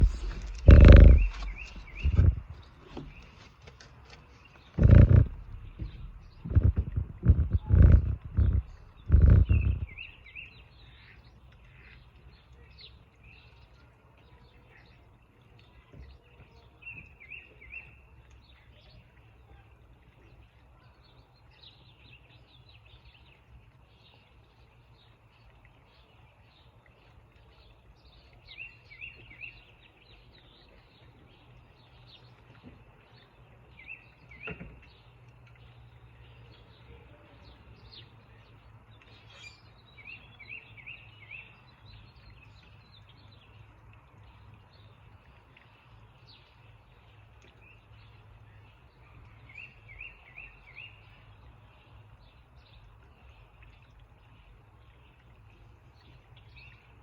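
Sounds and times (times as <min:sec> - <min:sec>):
steady low rumble: 0:00.0 - 0:03.2, 0:04.8 - 0:10.3
faint songbird chirps: 0:00.0 - 0:57.0.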